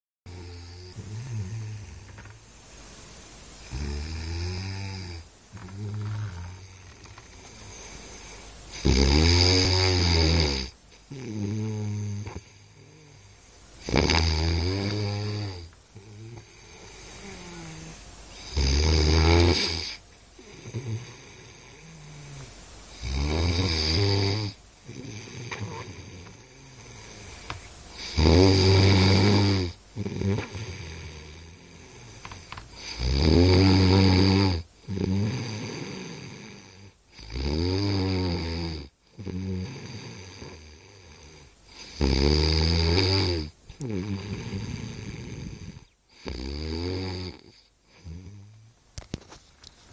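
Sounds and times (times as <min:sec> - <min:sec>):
man snoring loudly: 0:00.3 - 0:02.3, 0:03.6 - 0:48.7
soft breath sound: 0:05.6 - 0:08.8, 0:15.2 - 0:18.6.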